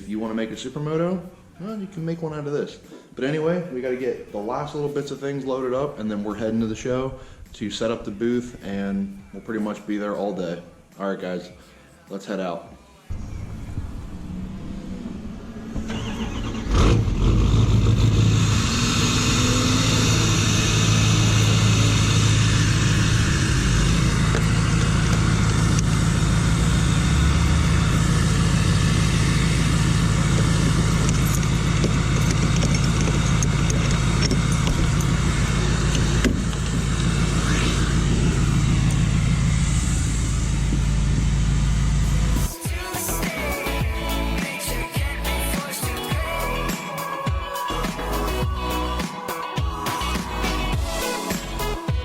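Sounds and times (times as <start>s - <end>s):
vehicle engine droning: 13.1s - 42.6s.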